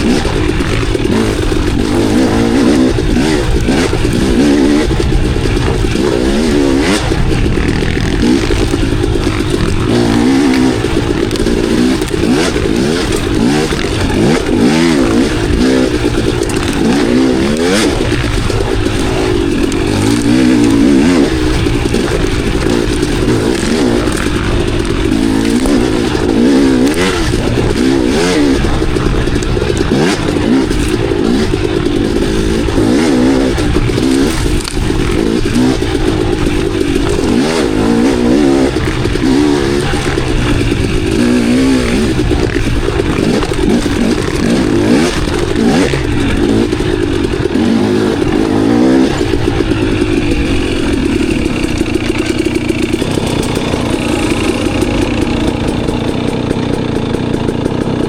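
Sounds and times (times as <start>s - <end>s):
dirt bike engine revving: 0.0s - 58.0s
sharp clicks and knocks: 0.0s - 58.0s.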